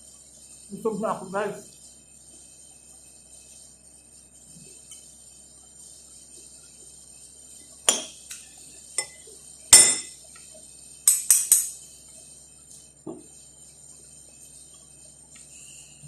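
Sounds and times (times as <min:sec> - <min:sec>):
cutlery clinking against plate: 0:07.9 - 0:08.4, 0:09.0 - 0:09.2, 0:09.8 - 0:10.2, 0:11.1 - 0:11.7.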